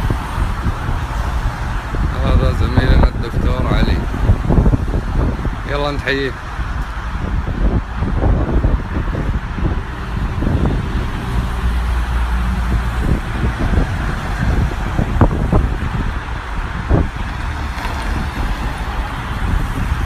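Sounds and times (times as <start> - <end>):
car engine and tyre noise: 0.0 - 20.0.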